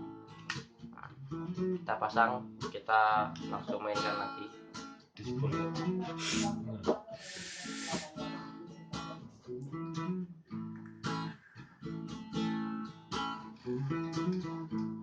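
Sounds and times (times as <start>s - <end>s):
acoustic guitar strummed chords: 0.0s - 15.0s.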